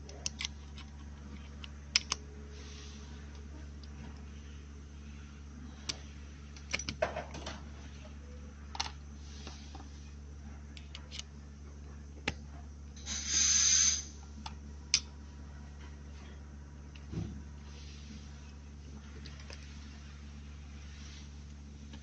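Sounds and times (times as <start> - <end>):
steady low hum: 0.0 - 22.0
hiss: 13.0 - 14.2.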